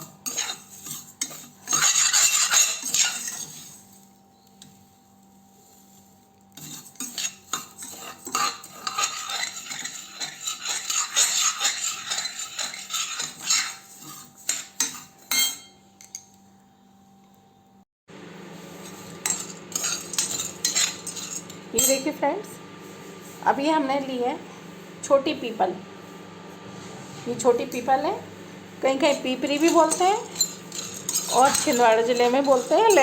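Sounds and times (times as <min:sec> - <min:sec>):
spoon scraping and clinking pan: 0:00.0 - 0:04.0, 0:06.5 - 0:16.3, 0:18.8 - 0:22.1, 0:28.9 - 0:33.0.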